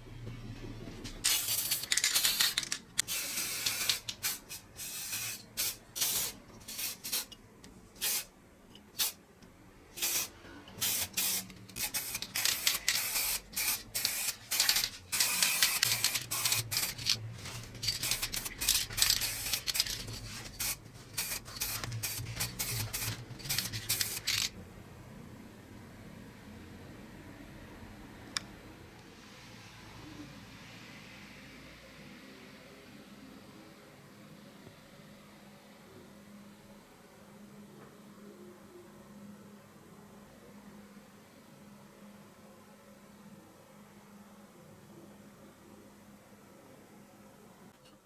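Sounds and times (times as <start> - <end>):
aerosol spray can hissing: 1.3 - 7.3, 8.0 - 8.3, 10.0 - 24.5.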